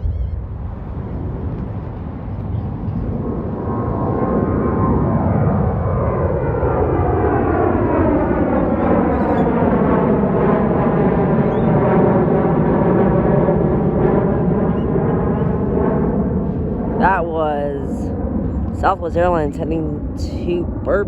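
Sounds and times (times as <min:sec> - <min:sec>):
jet airliner taking off: 0:00.0 - 0:20.9.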